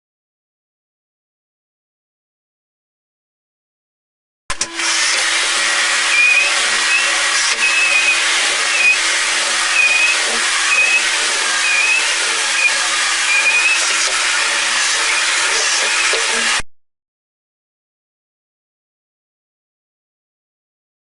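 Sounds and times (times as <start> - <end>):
electric sander motor hum: 4.8 - 16.6
sander high squeal: 5.6 - 16.6.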